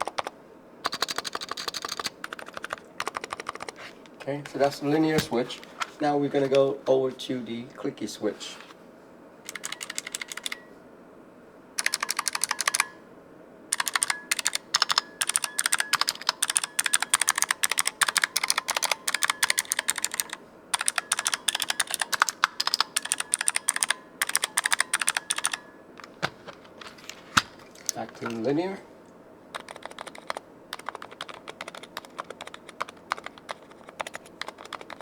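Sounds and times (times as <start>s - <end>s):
fast typing on clicky keyboard: 0.0s - 3.8s, 9.5s - 10.6s, 11.8s - 12.9s, 13.8s - 26.8s, 29.5s - 35.0s.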